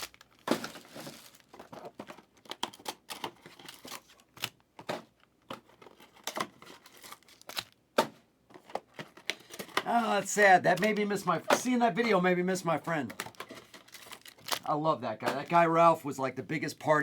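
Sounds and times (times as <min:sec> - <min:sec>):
wrapping being torn and crinkled: 0:00.0 - 0:04.6, 0:05.7 - 0:07.8, 0:13.2 - 0:14.8.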